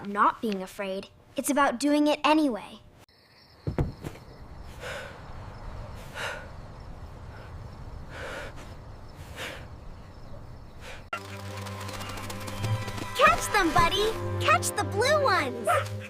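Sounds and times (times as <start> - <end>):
dull thump: 3.6 - 4.4
breathy puffs: 4.6 - 10.1, 10.7 - 11.2.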